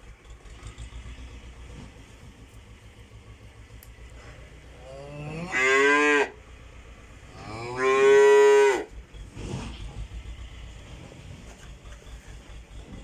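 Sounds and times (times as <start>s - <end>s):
calves bawling: 4.1s - 13.0s
steady low hum: 6.3s - 7.8s.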